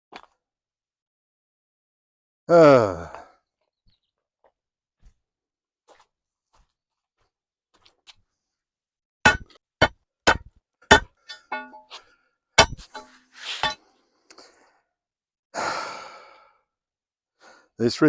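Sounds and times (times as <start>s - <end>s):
person sighing: 2.5s - 3.4s, 15.6s - 16.6s
sledgehammer striking stone wall: 9.2s - 12.0s, 12.6s - 13.8s.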